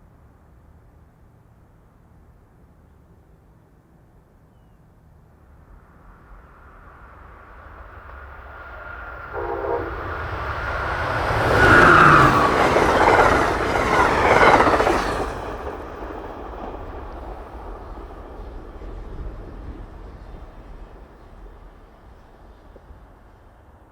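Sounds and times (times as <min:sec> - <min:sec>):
passenger train passing: 0:05.1 - 0:23.9
train horn note: 0:09.1 - 0:10.9.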